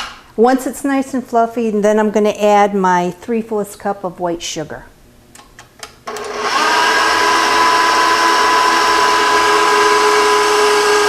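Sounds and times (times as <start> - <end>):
stand mixer motor whine: 6.1 - 11.0.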